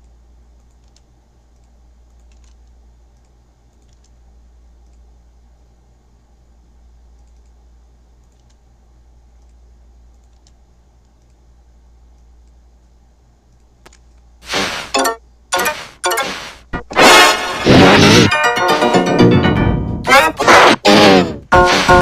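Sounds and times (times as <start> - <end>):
keyboard and mouse clicks: 0.0 - 5.1, 7.1 - 7.6, 8.2 - 8.6, 9.3 - 11.4, 13.5 - 14.3
steady low hum: 0.0 - 22.0.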